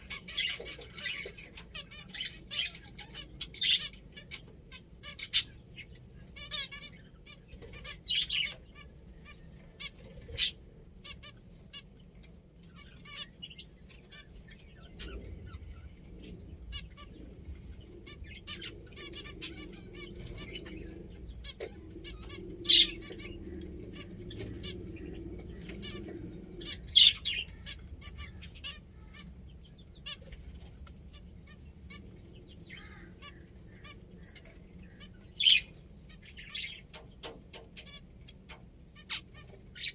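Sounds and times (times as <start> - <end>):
finches chirping: 0.0 - 39.9.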